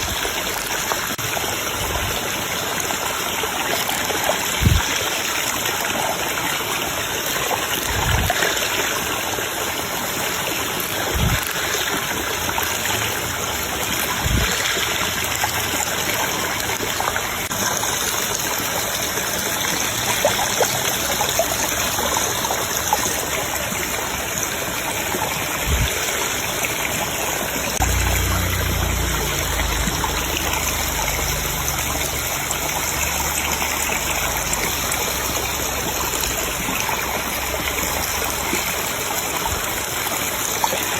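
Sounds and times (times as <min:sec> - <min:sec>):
stream water flowing: 0:00.0 - 0:40.9
low rumble: 0:27.8 - 0:32.9.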